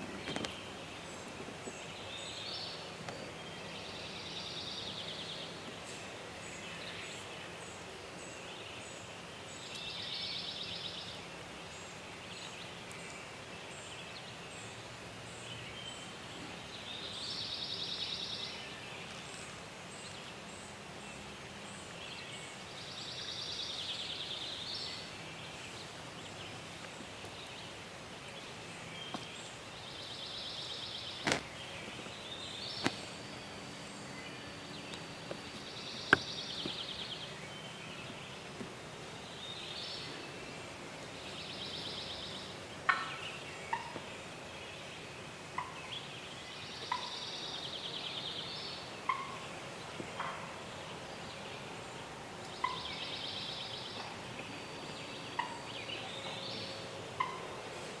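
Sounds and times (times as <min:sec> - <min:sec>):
sharp snaps and clicks: 0:31.2 - 0:31.5
distant turkey gobbling: 0:42.9 - 0:44.1, 0:45.6 - 0:45.8, 0:46.9 - 0:47.2, 0:49.0 - 0:49.5, 0:50.2 - 0:50.6, 0:55.3 - 0:56.4, 0:57.2 - 0:57.6.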